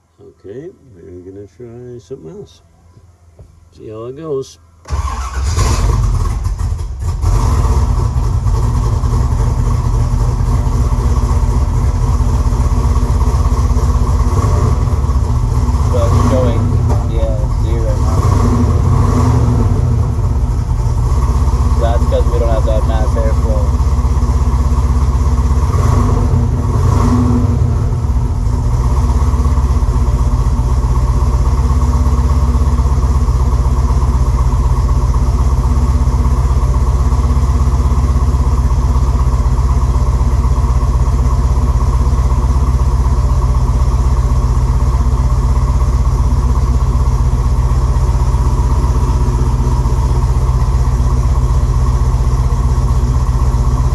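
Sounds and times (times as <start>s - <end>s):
loud vee eight engine idling: 4.8s - 53.9s.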